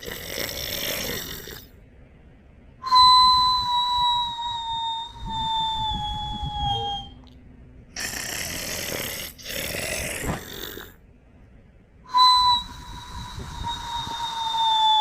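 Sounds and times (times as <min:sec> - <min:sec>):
breathy snores: 0:00.0 - 0:01.8, 0:08.0 - 0:11.0
high whistling note: 0:02.8 - 0:07.3, 0:12.1 - 0:15.0.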